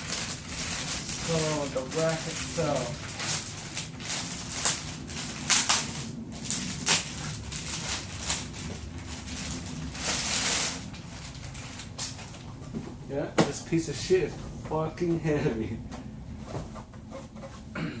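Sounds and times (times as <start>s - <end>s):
packaging rustling and scraping: 0.0s - 12.8s
steady low hum: 0.0s - 18.0s.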